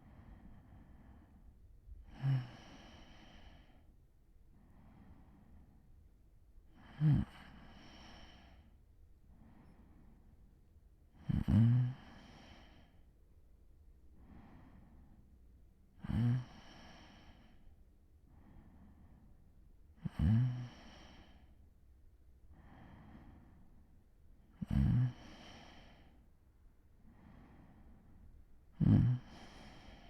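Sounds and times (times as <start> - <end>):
soft airy breaths: 0.0 - 13.2, 14.1 - 21.8, 22.4 - 30.0
man snoring: 2.1 - 3.7, 6.8 - 8.6, 11.2 - 12.7, 16.0 - 17.4, 20.0 - 21.4, 24.6 - 26.1, 28.8 - 30.0.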